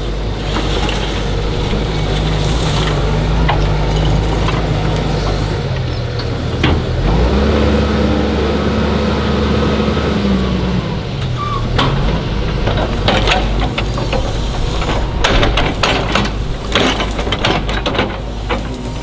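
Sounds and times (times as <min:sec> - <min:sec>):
excavator engine running: 0:00.0 - 0:19.0.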